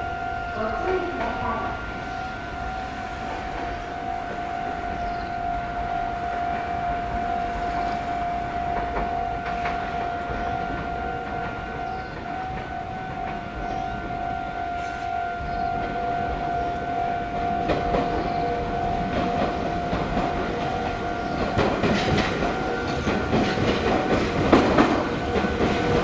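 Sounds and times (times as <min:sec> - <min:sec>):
level-crossing alarm ringing: 0:00.0 - 0:26.0
low railway rumble: 0:00.0 - 0:26.0.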